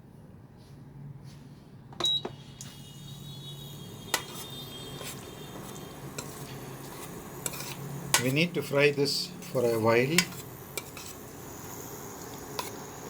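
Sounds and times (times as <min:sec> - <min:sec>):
pressure cooker hissing: 0:02.3 - 0:13.0
metal clicks on pressure cooker: 0:10.1 - 0:10.9
sharp metal tap: 0:10.2 - 0:10.9.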